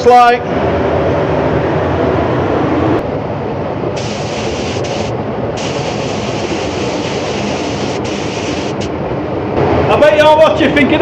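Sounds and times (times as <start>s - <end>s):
low rushing noise: 0.0s - 11.0s
paint spray gun hissing: 4.0s - 8.9s.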